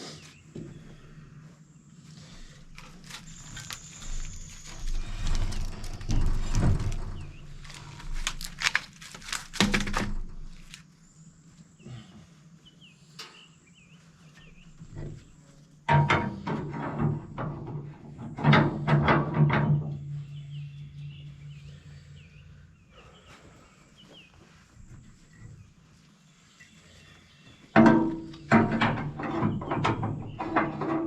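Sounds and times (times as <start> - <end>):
logs and boards knocking: 5.5 - 10.3
birds chirping: 11.0 - 15.8, 19.5 - 31.0.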